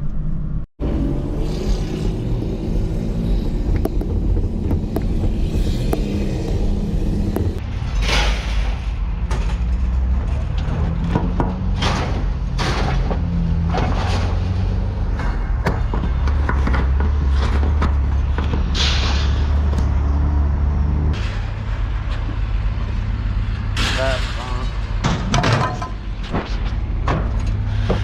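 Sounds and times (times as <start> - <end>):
truck engine drone: 0.0 - 28.0
scrap metal clunking and rattling: 7.1 - 19.7, 23.8 - 28.0.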